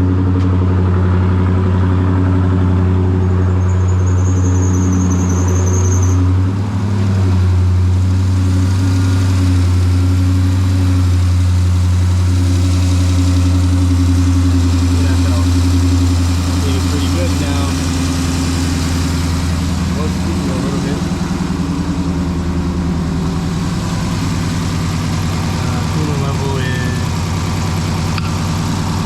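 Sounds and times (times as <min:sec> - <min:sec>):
car engine idling: 0:00.0 - 0:29.0
thin high whistle: 0:03.6 - 0:06.3.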